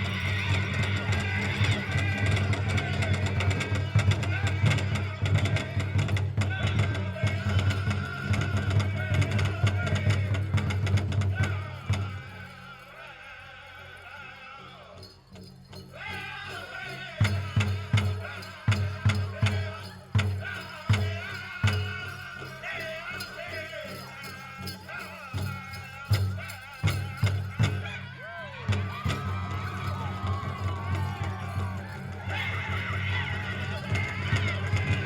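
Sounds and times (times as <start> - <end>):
large bass drum beats: 0.0 - 12.4, 28.6 - 35.0
group singing high wavering vocals: 0.0 - 35.0.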